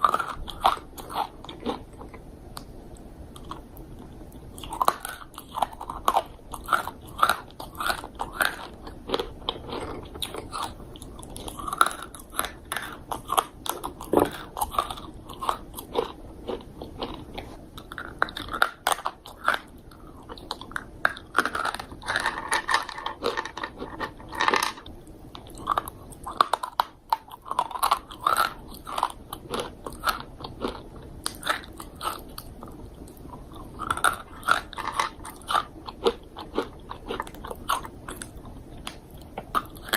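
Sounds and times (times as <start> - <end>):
person chewing crunchy fruit: 0.0 - 39.9.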